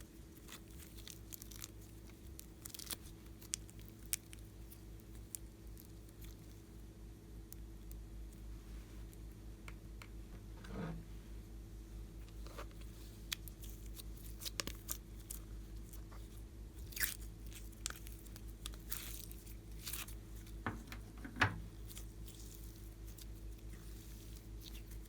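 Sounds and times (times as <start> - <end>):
slime crunching and squelching: 0.0 - 6.8, 12.4 - 20.6, 21.7 - 25.0
low electrical hum: 0.0 - 25.0.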